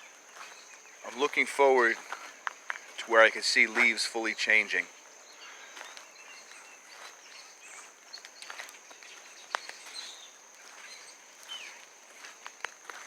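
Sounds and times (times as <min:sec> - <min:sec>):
footsteps crunching on leaves: 0:00.0 - 0:13.0
bird chirps: 0:03.8 - 0:11.9.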